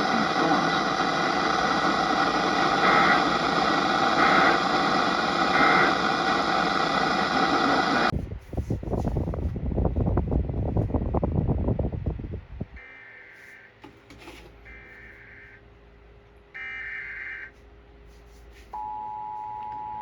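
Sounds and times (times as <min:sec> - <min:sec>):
data bursts: 0:00.0 - 0:08.1
radio hiss: 0:00.0 - 0:08.1.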